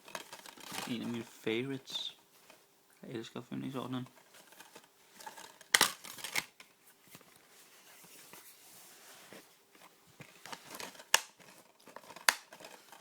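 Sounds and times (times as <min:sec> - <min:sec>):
faint rustling: 0:00.0 - 0:13.0
plastic case clicks: 0:05.7 - 0:06.6.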